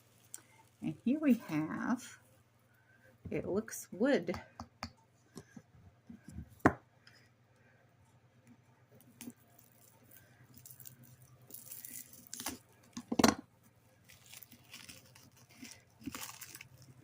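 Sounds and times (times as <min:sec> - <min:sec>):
wrapping rustling and tearing: 0:09.0 - 0:13.0, 0:14.0 - 0:17.0.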